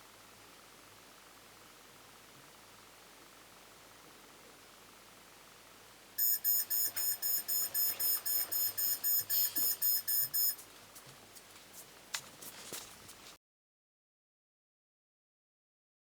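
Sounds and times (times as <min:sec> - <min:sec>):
fast high-pitched alarm beeps: 0:06.2 - 0:10.6.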